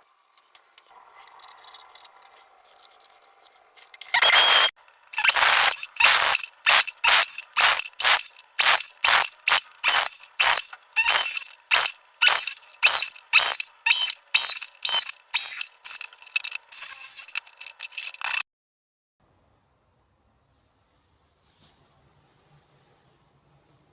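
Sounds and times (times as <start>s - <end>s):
hand tool squeaking scrape: 4.1s - 18.4s.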